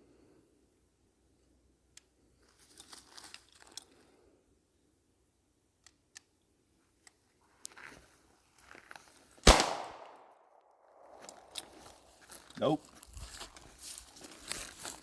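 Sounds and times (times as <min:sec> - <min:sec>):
faint gun clicks: 0:09.4 - 0:10.3
gunshot with echo: 0:09.4 - 0:10.3.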